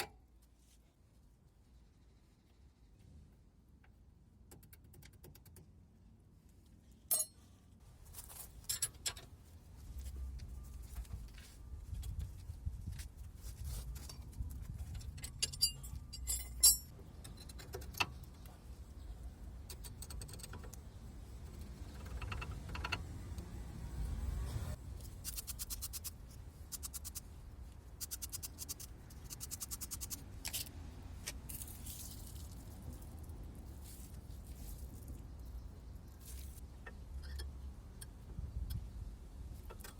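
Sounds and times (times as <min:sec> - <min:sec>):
hand tools clinking on metal: 0:07.1 - 0:07.4, 0:15.1 - 0:17.0.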